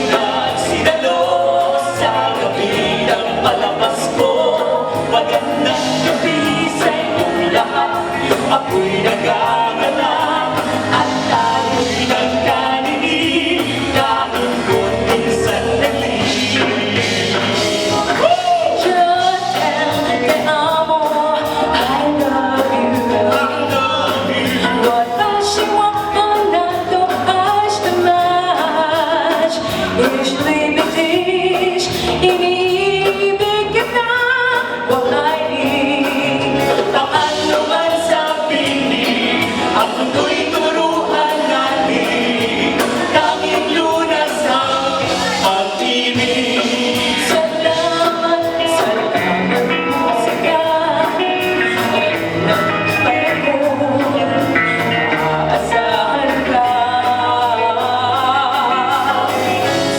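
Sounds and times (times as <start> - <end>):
choir singing: 0.0 - 59.9.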